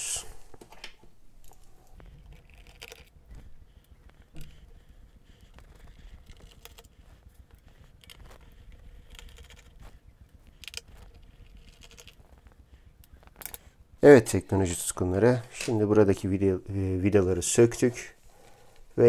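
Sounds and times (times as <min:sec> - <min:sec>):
small clicks and scrapes of screws: 0:01.4 - 0:03.2, 0:05.3 - 0:13.8.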